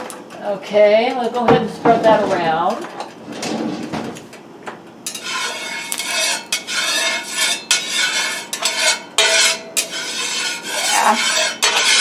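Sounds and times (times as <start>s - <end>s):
utensil scraping a frying pan: 5.1s - 12.0s.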